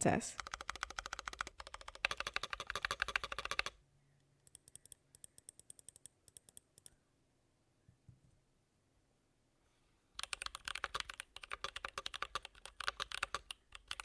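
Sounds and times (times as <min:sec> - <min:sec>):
mechanical keyboard typing: 0:00.4 - 0:03.8, 0:04.5 - 0:06.9, 0:10.2 - 0:14.0.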